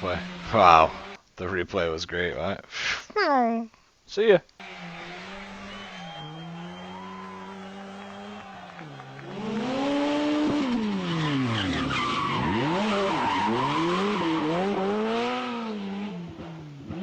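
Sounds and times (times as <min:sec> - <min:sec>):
rally car engine: 0:00.0 - 0:01.2, 0:04.6 - 0:17.0
tyres skidding and squealing: 0:00.0 - 0:01.2, 0:04.6 - 0:17.0.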